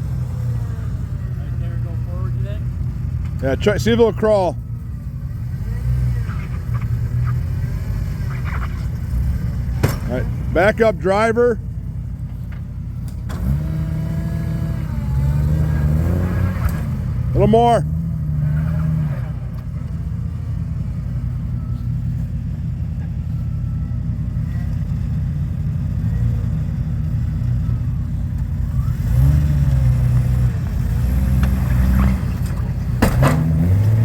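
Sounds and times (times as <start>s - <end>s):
truck engine revving: 0.0s - 34.0s.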